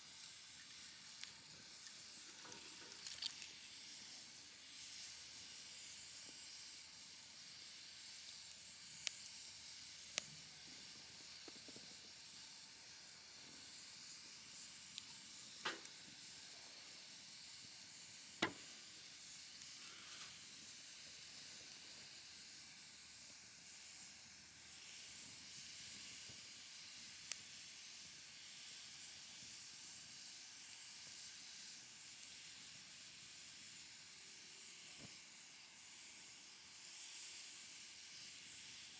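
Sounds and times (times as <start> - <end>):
campfire hiss: 0.0 - 38.9
campfire crackling pops: 14.6 - 16.2, 18.4 - 19.7.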